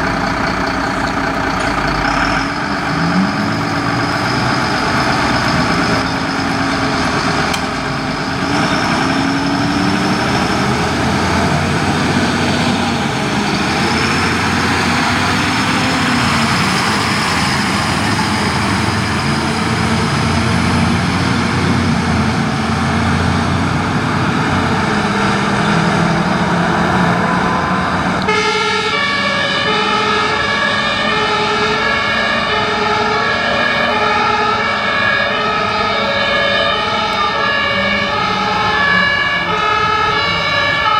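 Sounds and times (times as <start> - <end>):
diesel engine and road noise: 0.0 - 40.9
two-tone siren: 24.4 - 40.9.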